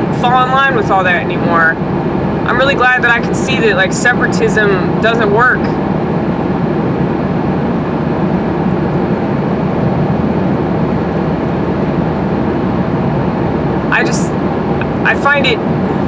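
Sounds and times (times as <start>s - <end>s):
car road and engine noise: 0.0s - 16.0s.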